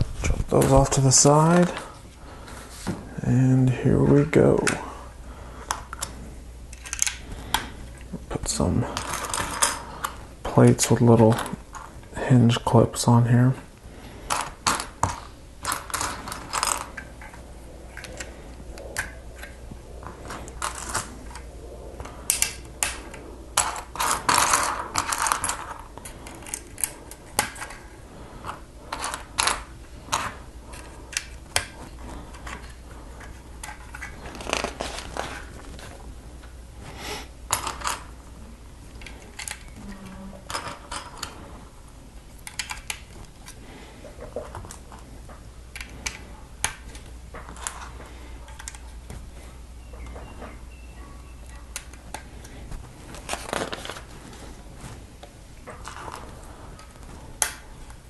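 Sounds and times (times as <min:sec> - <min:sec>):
plastic pieces clicking and clattering: 0:14.3 - 0:18.3, 0:23.6 - 0:35.5, 0:37.5 - 0:38.1, 0:40.5 - 0:41.4, 0:42.4 - 0:43.6.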